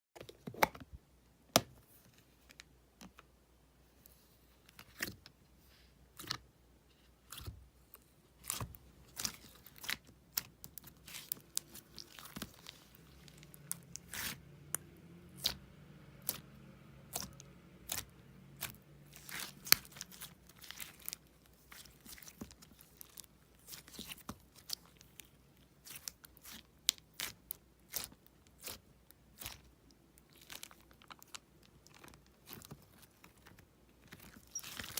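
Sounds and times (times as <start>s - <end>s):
slime popping and crackling: 8.4s - 14.4s, 17.1s - 34.9s.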